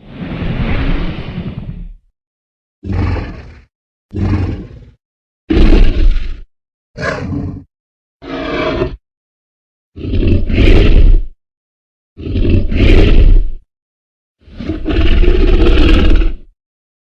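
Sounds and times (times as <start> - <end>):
dinosaur roars and growls: 2.8 - 9.0, 10.0 - 11.4, 12.2 - 13.6, 14.4 - 16.5.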